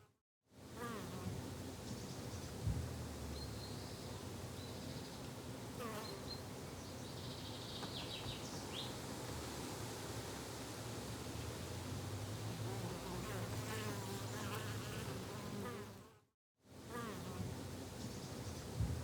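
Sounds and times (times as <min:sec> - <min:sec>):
brief low thump: 0:02.6 - 0:03.2, 0:18.8 - 0:19.0
flying insects buzzing: 0:12.3 - 0:16.2.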